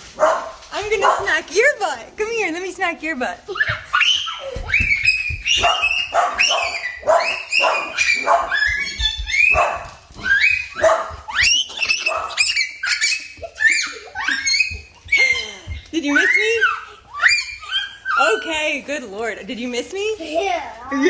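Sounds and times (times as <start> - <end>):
dog yipping and whining: 3.5 - 15.6, 16.2 - 18.4.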